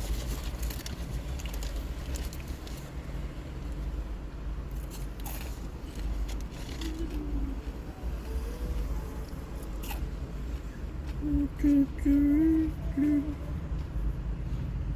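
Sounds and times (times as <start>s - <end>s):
crunchy chewing: 0.0s - 4.0s, 4.7s - 11.2s.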